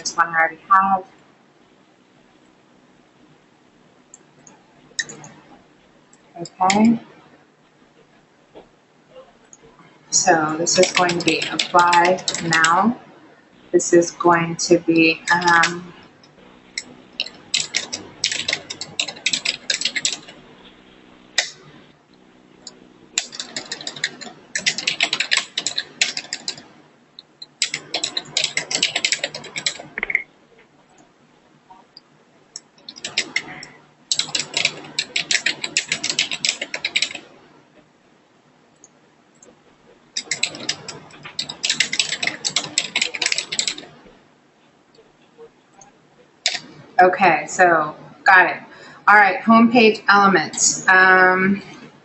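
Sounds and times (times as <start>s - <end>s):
keyboard typing: 4.1s - 5.4s, 10.3s - 12.9s, 14.9s - 20.5s, 21.3s - 21.8s, 22.6s - 31.1s, 32.6s - 37.3s, 40.2s - 44.1s, 45.7s - 46.7s.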